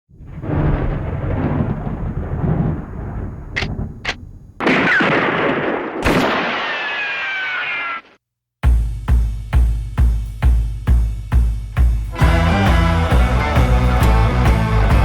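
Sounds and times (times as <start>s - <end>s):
rumbling: 0.1s - 5.8s
heavy gunshot-like booms: 0.2s - 6.7s
short sharp clicks: 3.6s - 4.3s
drum beat with heavy kick: 8.6s - 15.0s.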